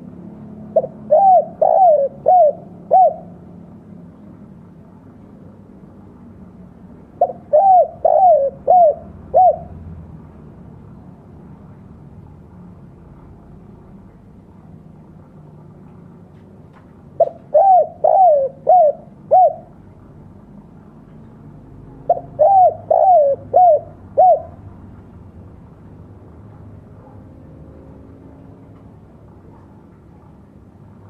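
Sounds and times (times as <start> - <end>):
dove cooing: 0.7 - 3.5, 7.2 - 9.8, 17.2 - 19.8, 22.0 - 24.7.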